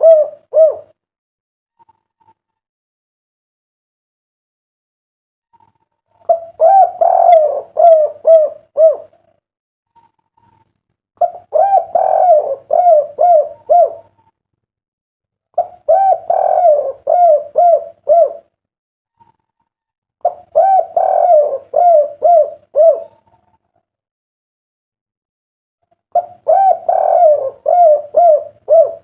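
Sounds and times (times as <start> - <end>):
dove cooing: 0.0 - 1.0, 6.2 - 9.2, 11.2 - 14.3, 15.6 - 18.5, 20.2 - 23.4, 26.1 - 29.0.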